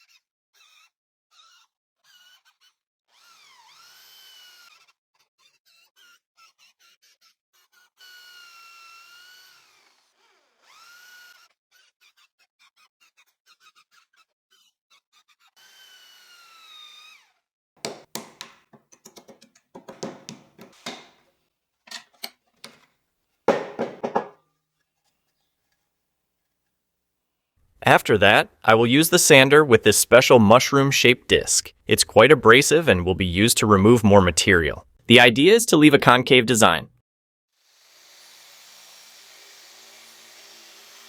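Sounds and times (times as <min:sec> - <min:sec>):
loud sharp knocks: 0:17.8 - 0:18.8, 0:19.8 - 0:21.2, 0:23.5 - 0:24.4
drill motor whine: 0:37.9 - 0:41.0.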